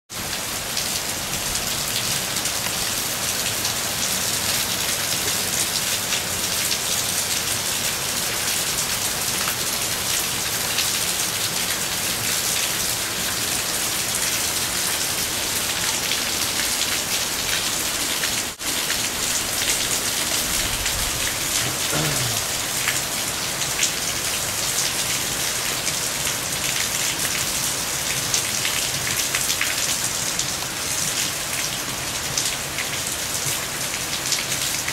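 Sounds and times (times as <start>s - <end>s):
heavy rain: 0.1s - 34.9s
floodwater rushing: 0.2s - 24.6s.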